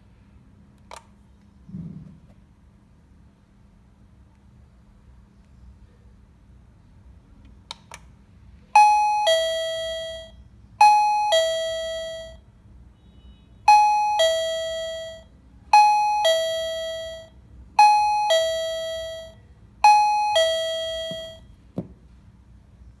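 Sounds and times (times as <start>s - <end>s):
doorbell ding-dong chime: 8.8s - 12.4s, 13.7s - 21.5s.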